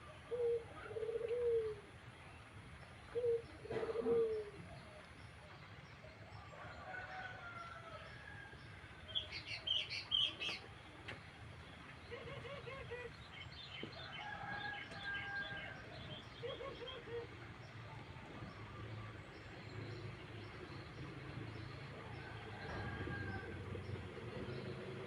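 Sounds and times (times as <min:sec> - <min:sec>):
pigeon cooing: 0:00.1 - 0:01.9, 0:03.1 - 0:04.7, 0:12.1 - 0:13.2, 0:16.4 - 0:17.4.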